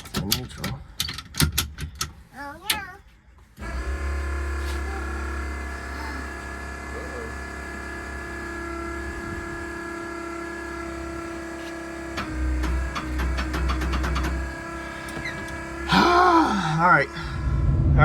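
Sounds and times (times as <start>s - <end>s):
golf cart motor humming: 3.6s - 17.6s.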